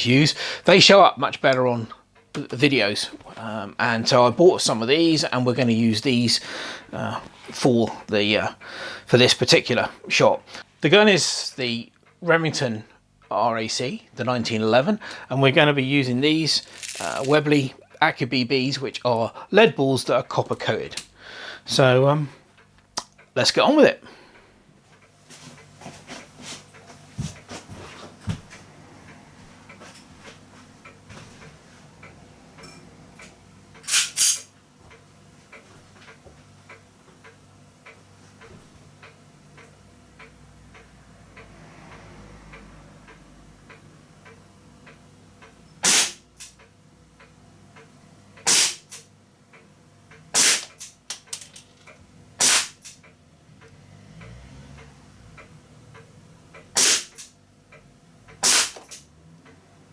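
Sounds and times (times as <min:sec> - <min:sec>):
air pistol shots cracking: 0:45.8 - 0:46.2, 0:48.5 - 0:49.0, 0:50.4 - 0:50.9, 0:52.4 - 0:53.0, 0:56.8 - 0:57.3, 0:58.4 - 0:59.0.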